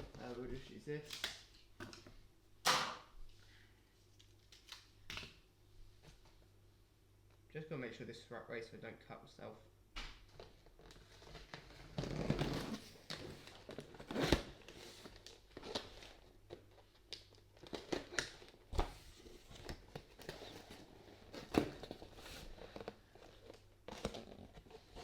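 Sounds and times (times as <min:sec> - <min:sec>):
packaging crinkling: 0:10.3 - 0:25.0.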